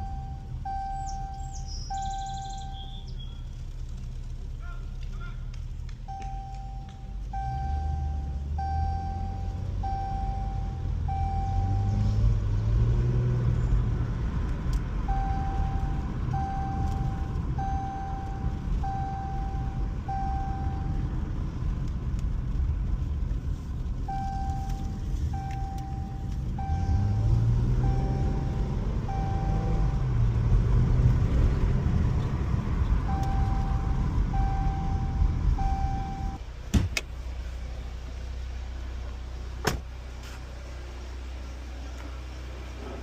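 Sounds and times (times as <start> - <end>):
vehicle warning chime: 0.0 - 3.6, 6.0 - 12.1, 15.0 - 21.2, 24.1 - 30.2, 33.0 - 36.4
car engine running: 0.0 - 43.0.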